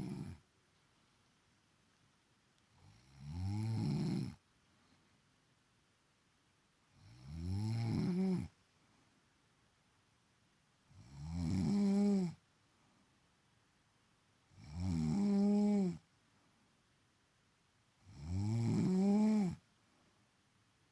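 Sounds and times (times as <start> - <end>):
woman snoring: 0.0 - 0.4, 2.8 - 4.4, 7.0 - 8.5, 11.0 - 12.4, 14.6 - 16.0, 18.0 - 19.6.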